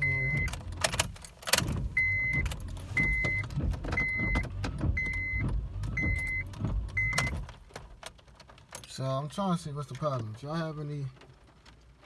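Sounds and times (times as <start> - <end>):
car warning chime beeping: 0.0 - 0.7, 1.7 - 7.4.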